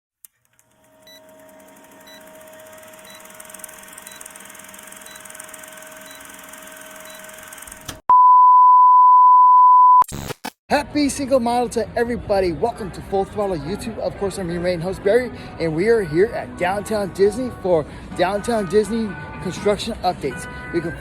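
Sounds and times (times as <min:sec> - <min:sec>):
steady beep tone: 0:08.1 - 0:10.0.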